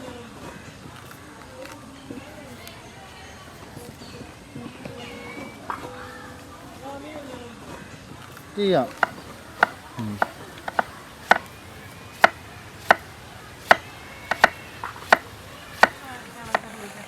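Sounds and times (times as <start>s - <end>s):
knife chopping pineapple: 9.0s - 11.5s, 12.2s - 16.7s.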